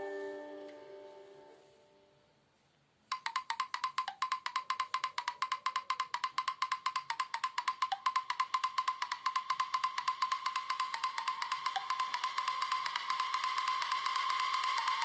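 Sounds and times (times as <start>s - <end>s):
fast clicking ringtone notes: 3.1s - 15.0s
ringtone: 3.1s - 15.0s.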